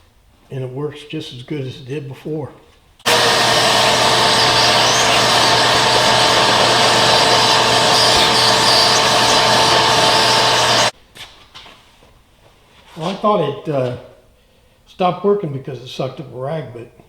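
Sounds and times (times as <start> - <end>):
shop vacuum running: 3.1 - 10.9.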